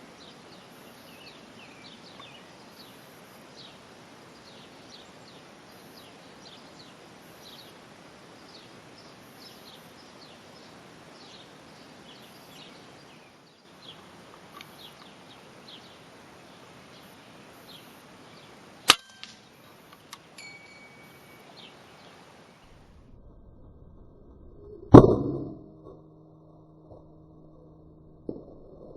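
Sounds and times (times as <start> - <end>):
small birds chirping: 0.0 - 23.0
outdoor hiss: 0.0 - 23.1
faint clicks: 13.8 - 15.2
rifle shot: 18.8 - 19.6
high ringing tone: 18.9 - 22.0.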